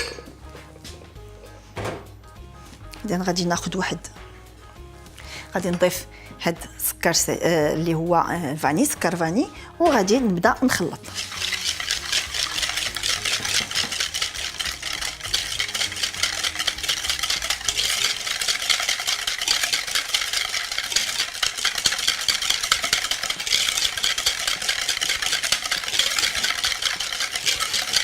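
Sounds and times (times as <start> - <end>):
whisk clattering against bowl: 11.1 - 28.0.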